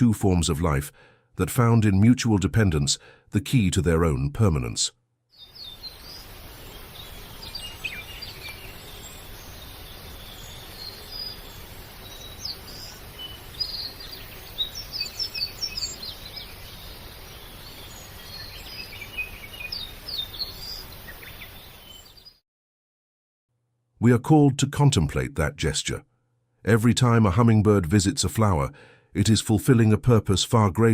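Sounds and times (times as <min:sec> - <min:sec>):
birds chirping: 0:00.0 - 0:22.4
steady background hiss: 0:05.4 - 0:22.1.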